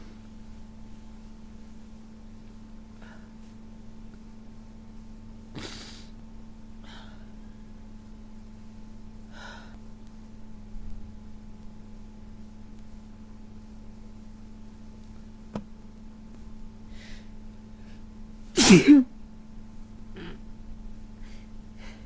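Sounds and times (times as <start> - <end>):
person sneezing: 5.6 - 6.1, 18.6 - 19.1.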